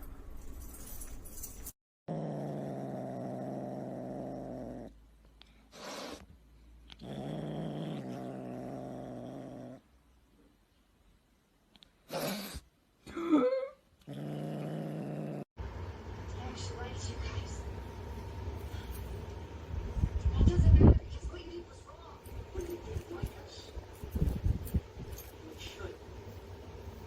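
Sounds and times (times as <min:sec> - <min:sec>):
cat growling: 0:02.1 - 0:05.0, 0:06.9 - 0:09.9, 0:14.0 - 0:15.5.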